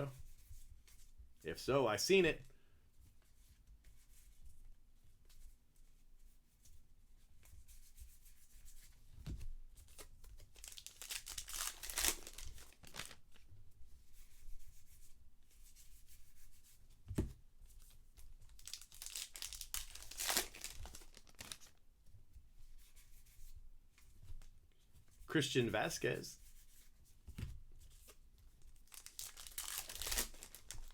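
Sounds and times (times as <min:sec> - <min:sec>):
wrappers tearing and crinkling: 0:10.6 - 0:13.3, 0:18.5 - 0:21.7, 0:28.8 - 0:30.9.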